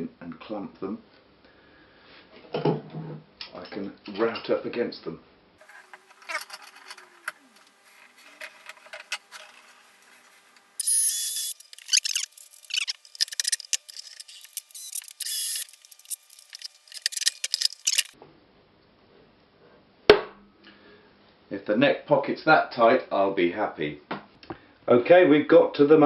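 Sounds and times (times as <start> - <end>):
wooden blocks scraping: 5.6 - 18.2
clamps clicking and rattling: 10.8 - 18.2.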